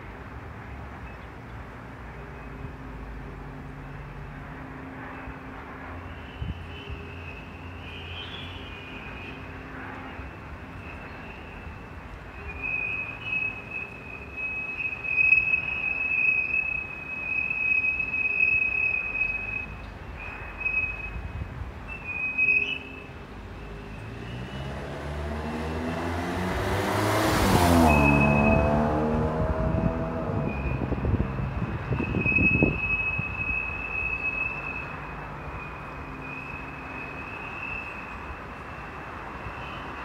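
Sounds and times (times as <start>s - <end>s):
high wind whistle: 5.1s - 24.6s, 26.5s - 40.0s
vehicle passing: 23.4s - 32.8s.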